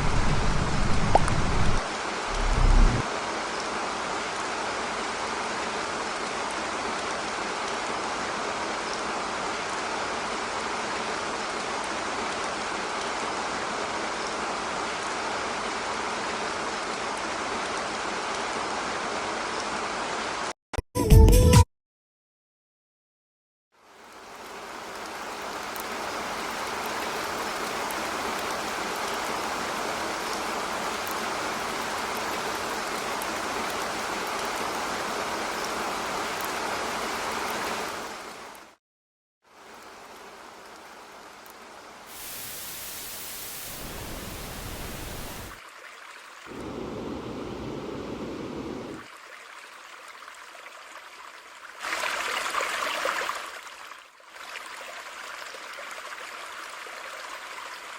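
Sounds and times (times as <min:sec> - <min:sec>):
rushing hiss-like sound effects: 0:02.3 - 0:03.0, 0:42.1 - 0:45.6.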